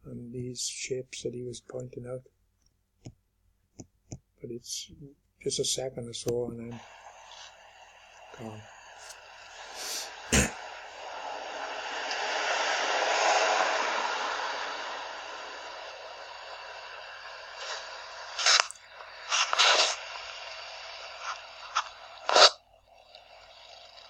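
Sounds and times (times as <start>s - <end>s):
rain hissing on microphone: 6.7s - 24.0s.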